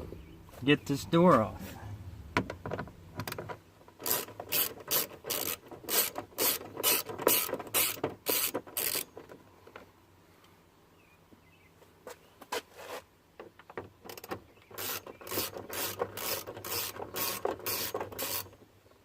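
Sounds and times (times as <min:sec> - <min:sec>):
ratchet clicking: 0:04.0 - 0:09.1, 0:14.1 - 0:18.5.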